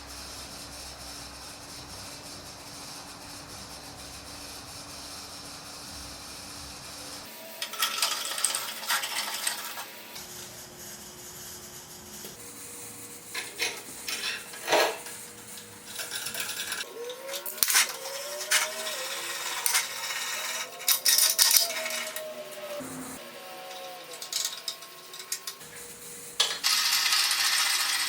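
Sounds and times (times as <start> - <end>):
metal parts clicking and clinking: 7.6 - 9.8, 13.3 - 22.3, 23.6 - 28.0.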